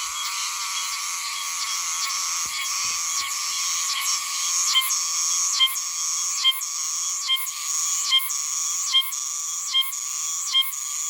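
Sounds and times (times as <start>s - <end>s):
cicada buzzing with accented notes: 0.0s - 11.0s.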